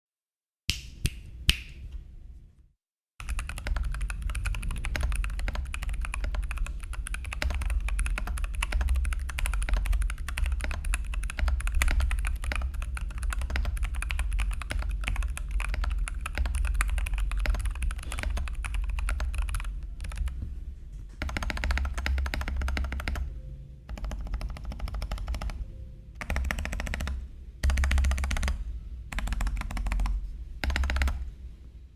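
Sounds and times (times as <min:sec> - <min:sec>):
keyboard typing: 0:03.2 - 0:20.4, 0:21.2 - 0:23.3, 0:23.9 - 0:31.3.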